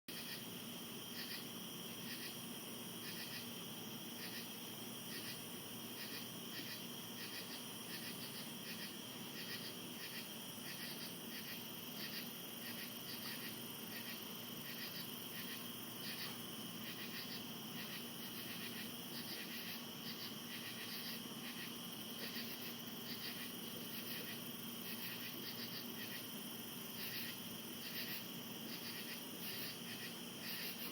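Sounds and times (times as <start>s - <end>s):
pulsing insect call: 0.1s - 3.6s, 4.2s - 30.9s
crickets trilling: 0.1s - 30.9s.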